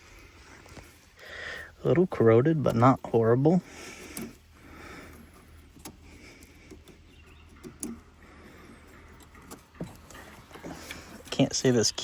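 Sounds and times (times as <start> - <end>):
faint clicks and rustling: 2.5 - 12.0.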